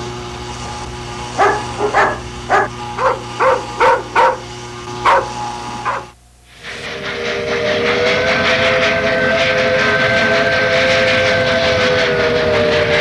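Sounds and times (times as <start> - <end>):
steady low hum: 0.0 - 13.0
dog barking: 1.4 - 6.2.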